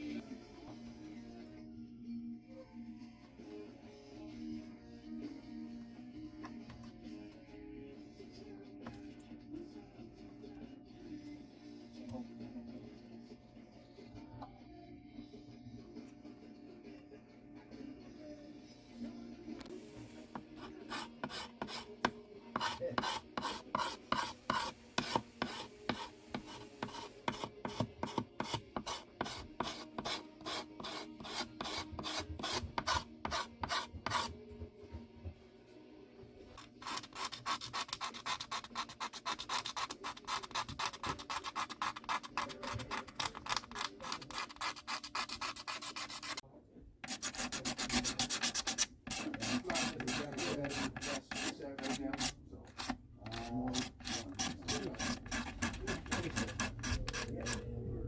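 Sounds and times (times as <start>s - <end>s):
hand tool rasping on wood: 20.4s - 34.3s, 36.6s - 46.4s, 47.0s - 57.6s.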